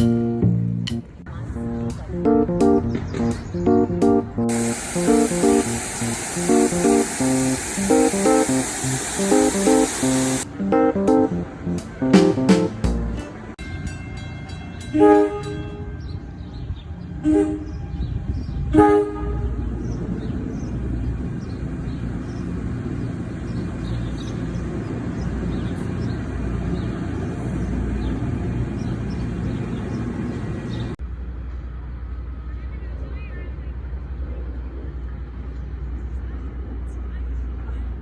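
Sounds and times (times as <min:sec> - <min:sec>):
steady low rumble: 0:01.0 - 0:10.5.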